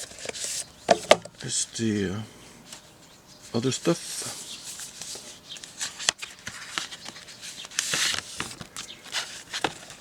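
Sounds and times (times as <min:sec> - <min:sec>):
paper sliding rustle: 0:03.8 - 0:10.0.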